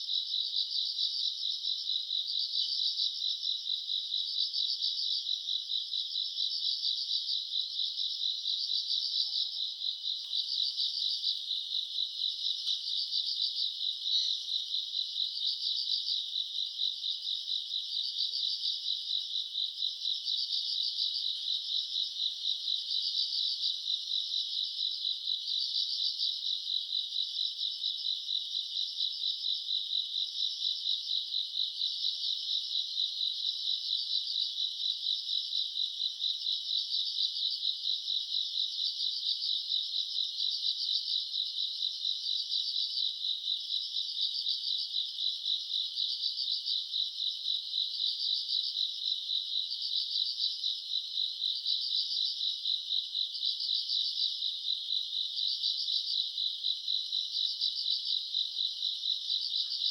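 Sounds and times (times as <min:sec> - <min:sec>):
insect chirps: 0:00.0 - 0:59.9
insects trilling: 0:51.5 - 0:59.9.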